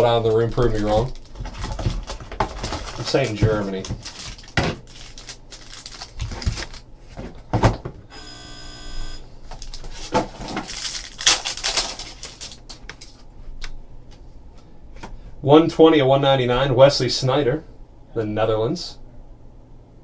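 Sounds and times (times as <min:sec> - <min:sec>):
wrapper crinkling: 0:00.0 - 0:07.2, 0:09.5 - 0:13.3
electronic ringing tone: 0:08.1 - 0:09.2.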